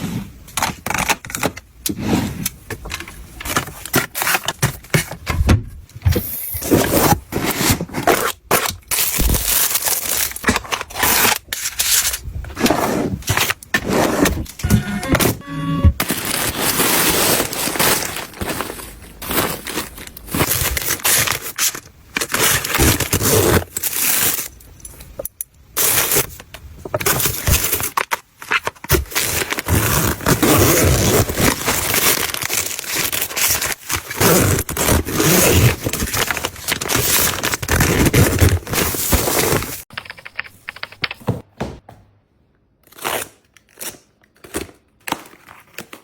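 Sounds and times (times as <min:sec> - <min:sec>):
packaging crinkling and rustling: 0:06.6 - 0:14.6, 0:16.0 - 0:25.2, 0:25.8 - 0:41.2.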